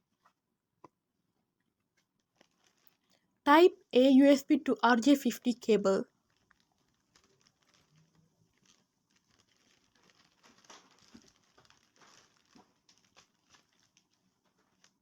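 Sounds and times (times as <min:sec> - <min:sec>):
packaging rustling and crinkling: 0:02.2 - 0:03.2, 0:06.2 - 0:15.0.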